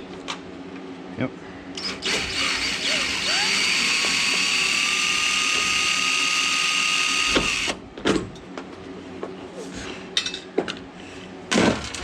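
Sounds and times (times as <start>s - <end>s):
power drill motor whine: 1.8s - 7.8s.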